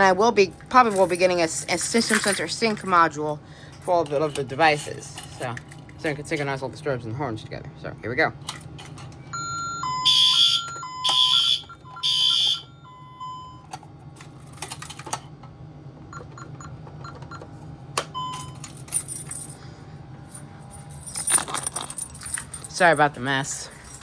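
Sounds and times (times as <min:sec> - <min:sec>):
keys jangling: 0:00.0 - 0:06.7, 0:08.4 - 0:09.3, 0:13.7 - 0:15.3, 0:18.3 - 0:19.7, 0:20.3 - 0:24.0
fire alarm horn blasts: 0:09.3 - 0:13.7
two-tone alarm keypad sounder: 0:09.3 - 0:13.7, 0:18.2 - 0:18.6
keypad beep: 0:09.4 - 0:12.6, 0:16.1 - 0:17.5, 0:18.1 - 0:18.5.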